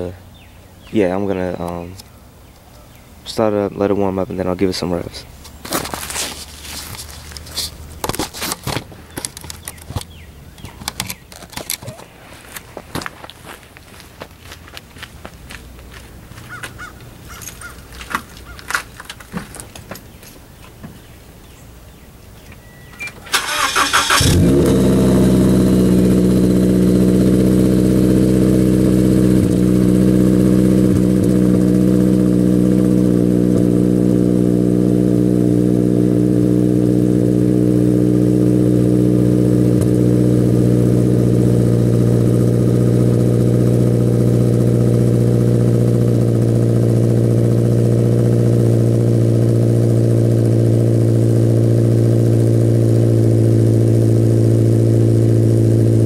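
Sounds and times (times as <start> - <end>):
starter cranking: 23.0 - 24.8
car engine idling loudly: 23.5 - 56.0.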